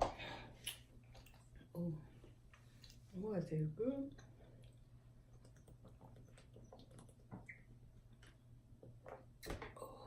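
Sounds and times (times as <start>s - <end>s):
low steady hum: 0.0s - 10.0s
chewing mouth clicks and smacks: 0.6s - 1.6s.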